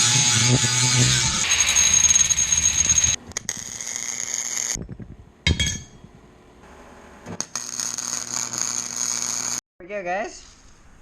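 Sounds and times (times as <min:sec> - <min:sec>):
power tool whining on steel: 0:00.0 - 0:03.2.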